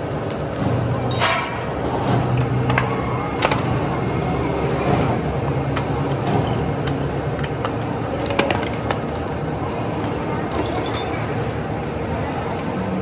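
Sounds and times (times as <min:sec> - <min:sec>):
road noise: 0:00.0 - 0:13.0
metal tools clinking on wheel hub: 0:01.0 - 0:01.7, 0:10.4 - 0:11.5.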